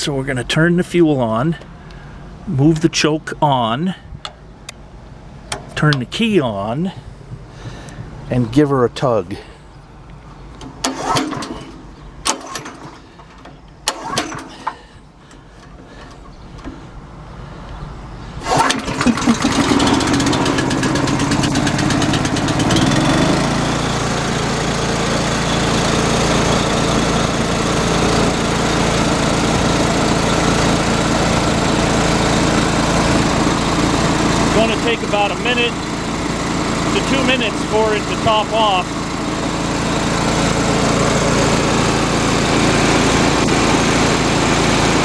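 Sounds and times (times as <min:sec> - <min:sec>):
air compressor engine running: 0:05.3 - 0:06.1, 0:10.3 - 0:45.0
recoil starter clacks: 0:05.4 - 0:06.1, 0:10.1 - 0:17.0, 0:18.4 - 0:45.0.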